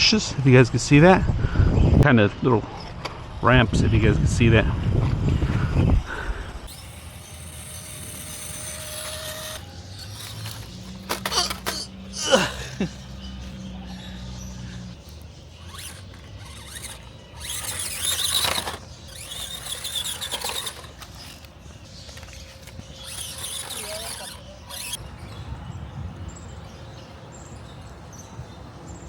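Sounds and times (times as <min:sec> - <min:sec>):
small electric motor whirring: 0:05.8 - 0:25.4
tyres scrubbing over rough ground: 0:06.6 - 0:25.0.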